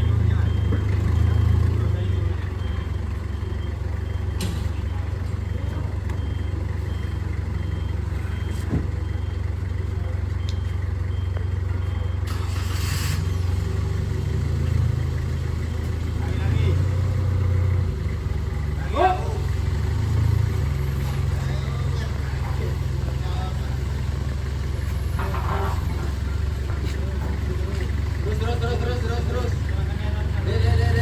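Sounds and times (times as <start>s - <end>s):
faint high beep: 0.0s - 12.4s
vehicle engine rumbling: 0.0s - 31.0s
short hiss: 12.3s - 13.3s.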